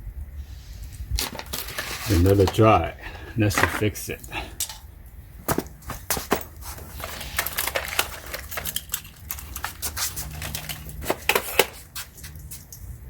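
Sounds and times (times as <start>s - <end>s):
low steady hum: 0.0s - 13.0s
small hard objects rattling: 1.2s - 2.6s, 6.2s - 12.6s.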